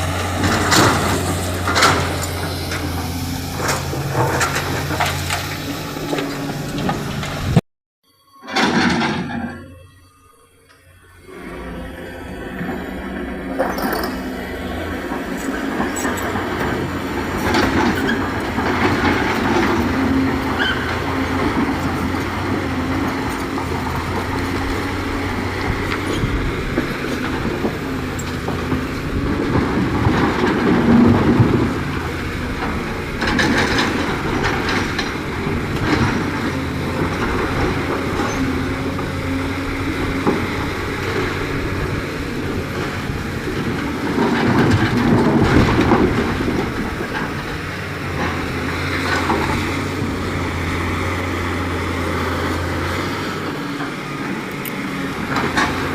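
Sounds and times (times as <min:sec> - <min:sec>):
diesel engine running: 0:00.0 - 0:07.6, 0:10.8 - 0:55.9
metal clanks from digging: 0:13.6 - 0:14.8.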